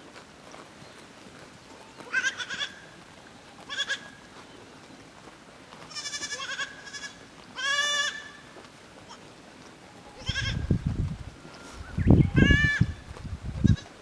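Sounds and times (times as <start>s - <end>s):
goat kids bleating: 1.8s - 2.9s, 3.6s - 4.4s, 5.8s - 9.3s, 10.2s - 10.8s, 11.6s - 14.0s.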